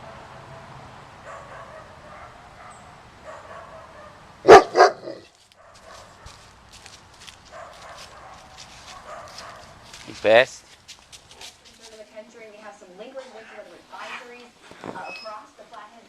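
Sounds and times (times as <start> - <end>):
dog barking: 1.2 - 6.4, 7.5 - 9.8.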